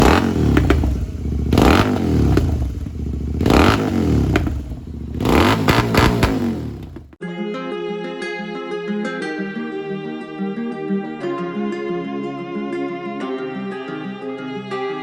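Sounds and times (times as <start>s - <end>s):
exhaust pops and crackles: 0.0s - 7.2s
motorcycle engine revving: 0.0s - 7.2s.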